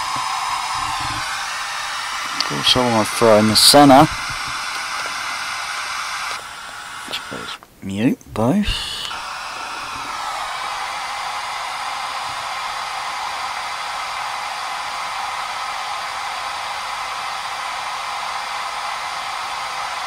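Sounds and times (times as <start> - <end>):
pink noise hiss: 0.0 - 10.5.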